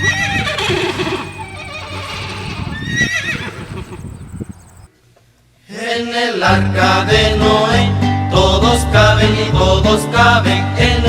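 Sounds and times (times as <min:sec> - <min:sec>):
horse whinnying: 0:00.0 - 0:04.6
hooves clopping: 0:00.0 - 0:04.9.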